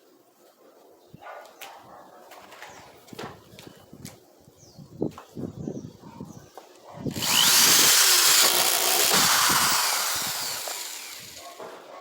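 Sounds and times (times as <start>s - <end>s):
power tool running: 7.1s - 11.7s.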